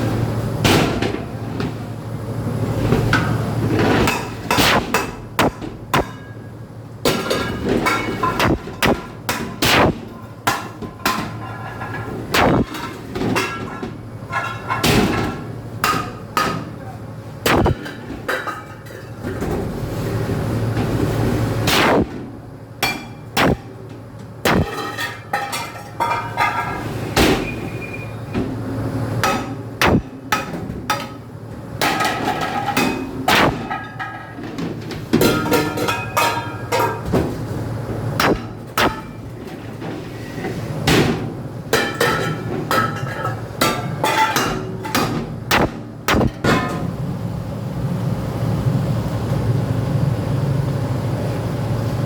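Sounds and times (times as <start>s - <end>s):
loud metallic bangs and clangs: 3.0s - 16.8s, 17.4s - 18.9s, 21.6s - 27.8s, 29.2s - 37.4s, 38.2s - 47.0s.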